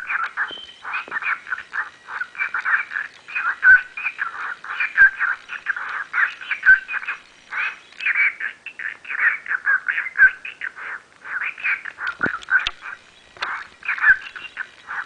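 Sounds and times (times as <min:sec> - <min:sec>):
cockatiel warbling calls: 0:00.0 - 0:15.0.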